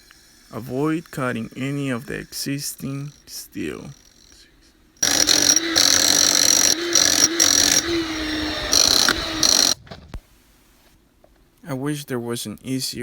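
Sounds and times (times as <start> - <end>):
power tool cutting concrete: 0.0 - 9.8.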